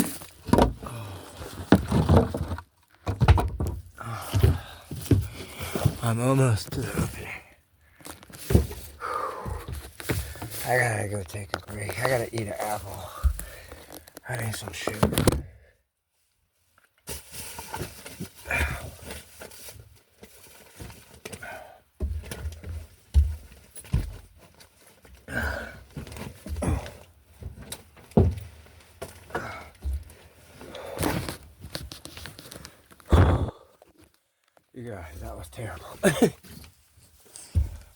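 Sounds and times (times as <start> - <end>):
thumps and knocks of crawling: 0.0 - 7.2, 8.0 - 10.7, 11.3 - 15.5, 22.0 - 34.1, 37.3 - 37.9
rustling: 16.1 - 21.4.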